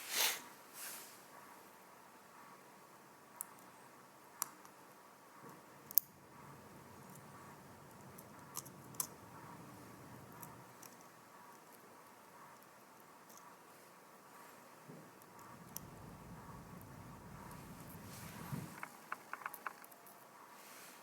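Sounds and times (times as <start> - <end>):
soft rustle: 0.0 - 1.6, 12.4 - 21.0.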